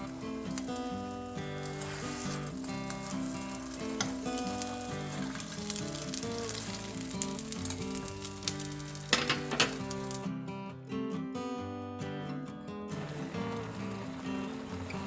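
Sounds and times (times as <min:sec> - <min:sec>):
clicks and crackles: 0:00.0 - 0:10.3
food sizzling in a pan: 0:00.0 - 0:10.4, 0:12.9 - 0:15.0
background music: 0:00.0 - 0:15.0.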